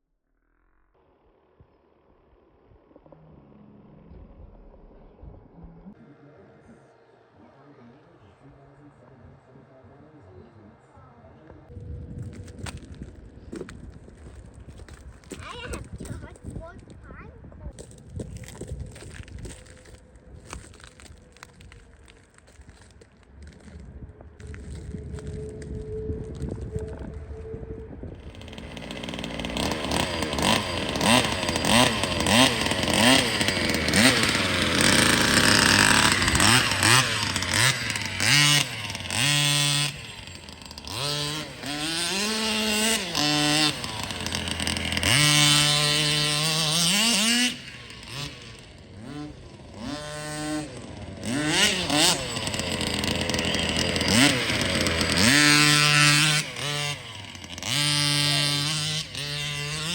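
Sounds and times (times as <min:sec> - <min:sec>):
two-stroke engine revving: 0:24.4 - 0:59.9.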